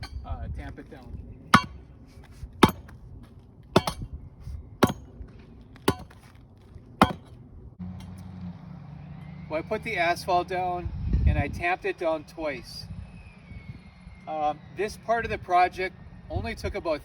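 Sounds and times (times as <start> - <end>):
steady low hum: 1.3 - 7.8
hand tamper pounding asphalt: 1.6 - 1.8, 2.6 - 3.0, 3.8 - 4.1, 4.8 - 5.1, 5.9 - 6.2, 7.0 - 7.3.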